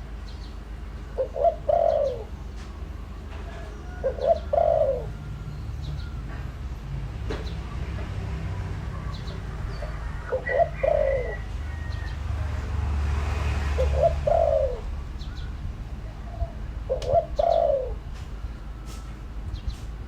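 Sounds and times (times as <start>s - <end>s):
dove cooing: 1.1s - 5.4s, 8.8s - 12.7s, 13.5s - 18.2s
steady low rumble: 13.9s - 20.0s.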